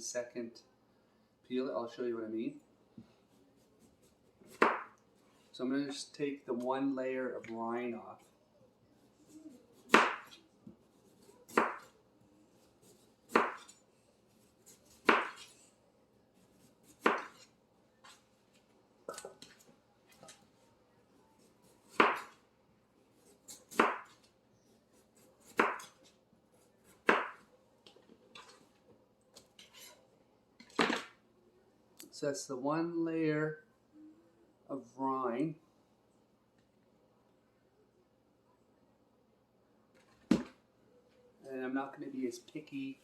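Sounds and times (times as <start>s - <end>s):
knife chopping melon rind: 9.8s - 12.0s, 12.6s - 15.6s, 16.4s - 17.5s, 21.4s - 22.4s, 23.1s - 24.3s, 25.0s - 27.5s.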